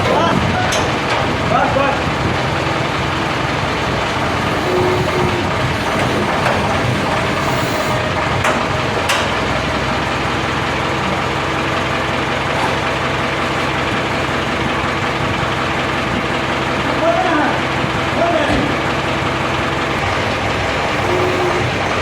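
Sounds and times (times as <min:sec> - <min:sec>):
diesel engine idling: 0:00.0 - 0:22.0.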